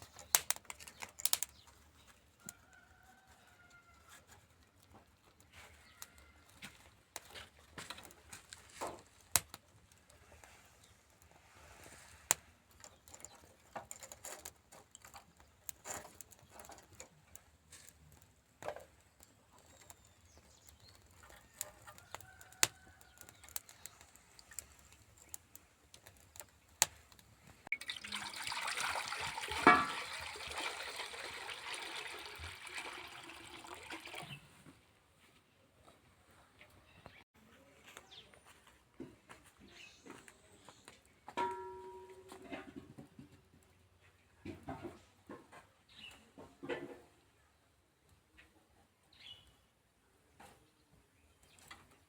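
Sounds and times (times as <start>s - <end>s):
water pouring: 27.7s - 34.5s.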